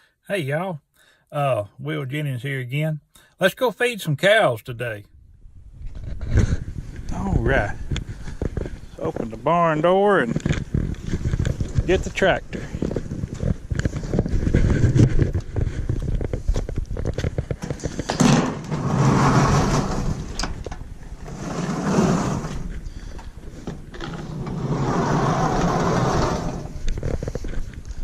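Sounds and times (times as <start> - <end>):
sliding barn door rattling open: 18.0 - 22.7, 24.0 - 26.8.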